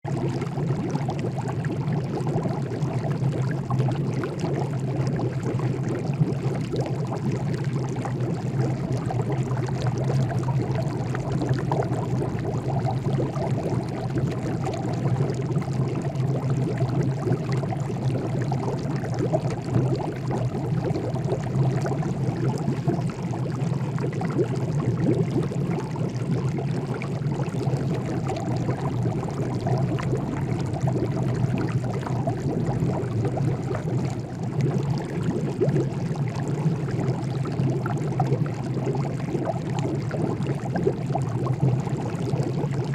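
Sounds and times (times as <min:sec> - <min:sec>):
water boiling: 0:00.1 - 0:42.9.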